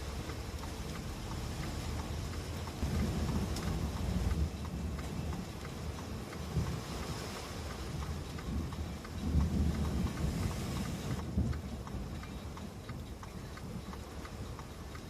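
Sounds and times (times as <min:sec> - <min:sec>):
low rumble: 0:00.0 - 0:06.9
heavy rain falling: 0:00.0 - 0:15.0
raindrop ticks: 0:00.0 - 0:15.0.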